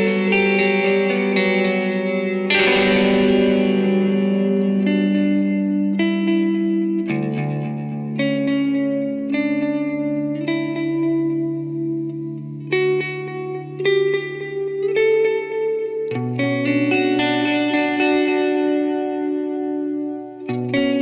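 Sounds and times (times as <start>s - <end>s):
electric guitar ringing notes: 0.0s - 21.0s
held low note: 2.5s - 4.9s.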